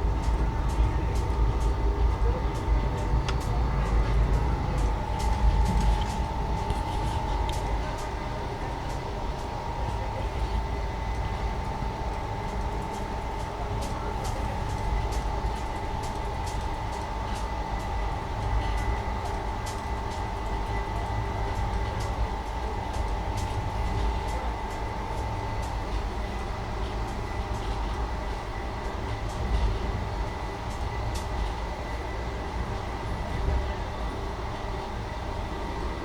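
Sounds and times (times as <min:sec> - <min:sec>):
train low rumble: 0:00.0 - 0:36.0
light clicks and rattles: 0:00.1 - 0:26.1.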